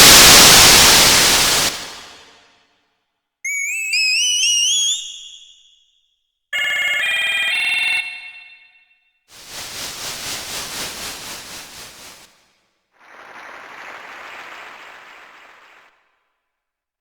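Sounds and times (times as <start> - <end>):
pulsing rush of noise: 9.4 - 12.3.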